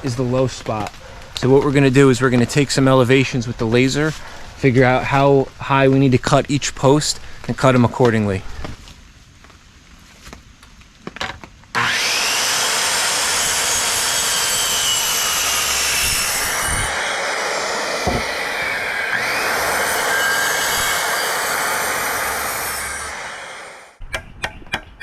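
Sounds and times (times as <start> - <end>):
power saw cutting wood: 11.7 - 24.0.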